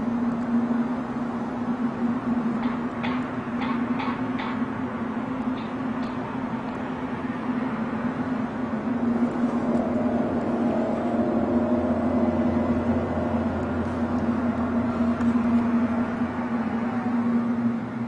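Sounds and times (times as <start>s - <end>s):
droning hum: 0.0s - 18.0s
low rumble: 6.6s - 18.0s.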